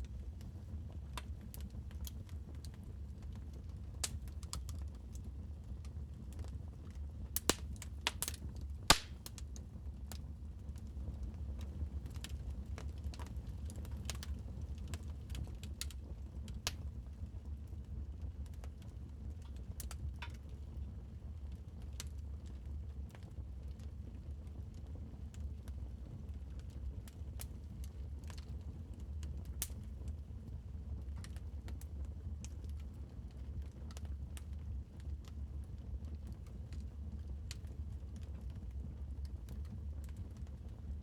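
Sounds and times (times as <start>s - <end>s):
low rumble of flames: 0.0s - 41.0s
wood fire pops and snaps: 1.1s - 10.2s, 11.5s - 17.0s, 29.2s - 30.2s.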